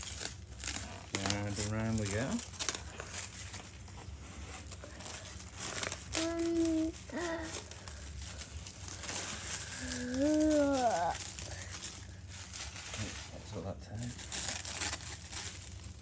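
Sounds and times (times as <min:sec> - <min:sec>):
packaging wrap crinkling: 0:00.0 - 0:16.0
child vocal sounds: 0:06.1 - 0:07.7, 0:09.6 - 0:11.7.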